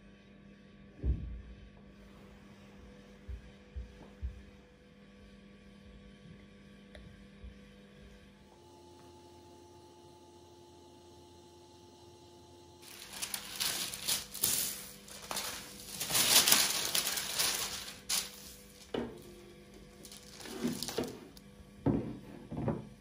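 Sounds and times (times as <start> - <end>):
faint steady hum: 5.8 - 23.0
crinkling and rustling handling: 12.8 - 21.5.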